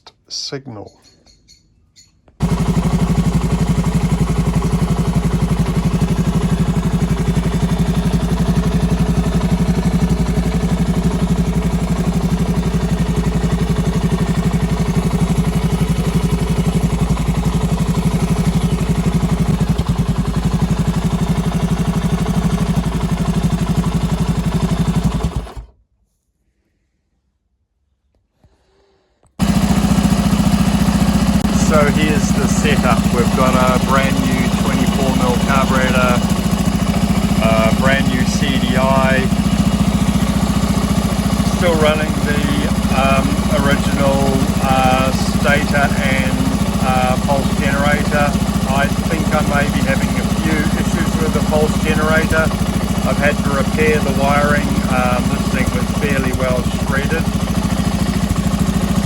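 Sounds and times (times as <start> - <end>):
motorcycle engine idling: 2.4 - 25.7, 29.4 - 59.0.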